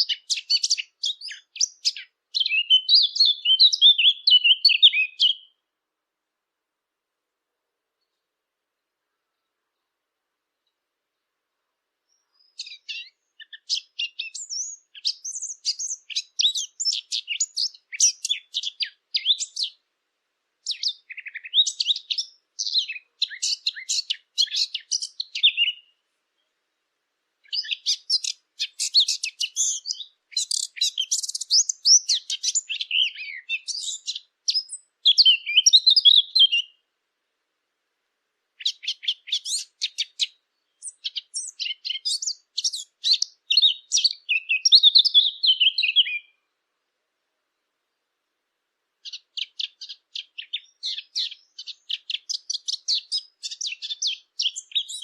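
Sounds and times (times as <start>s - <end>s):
warbler singing: 0.0s - 5.6s, 12.0s - 19.8s, 20.6s - 26.5s, 27.4s - 36.8s, 38.6s - 46.4s, 49.0s - 55.0s.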